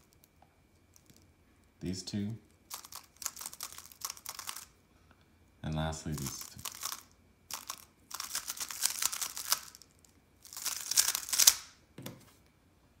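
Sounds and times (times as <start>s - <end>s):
puzzle cube plastic clicking: 2.7s - 4.7s, 6.2s - 9.9s, 10.5s - 11.7s.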